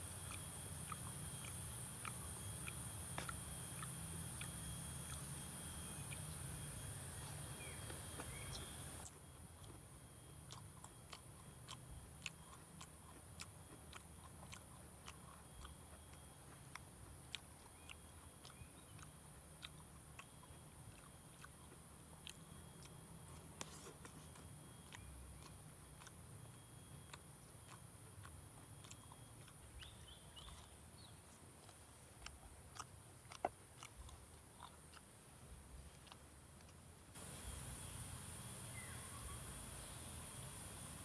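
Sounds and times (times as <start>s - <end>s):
steady high hiss: 0.0s - 9.1s, 37.2s - 41.0s
person chewing: 0.0s - 38.9s.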